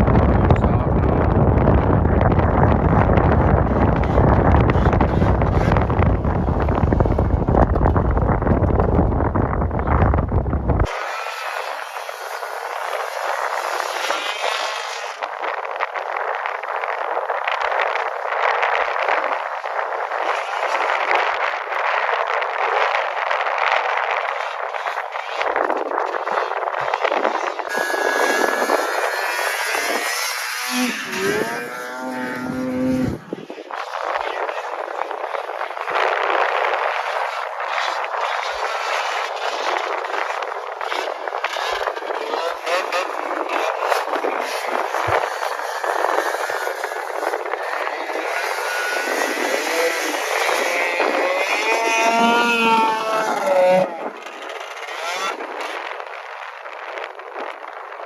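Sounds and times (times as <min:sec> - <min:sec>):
snowmobile engine revving: 0:00.0 - 0:09.1, 0:10.8 - 0:15.2, 0:27.7 - 0:56.0.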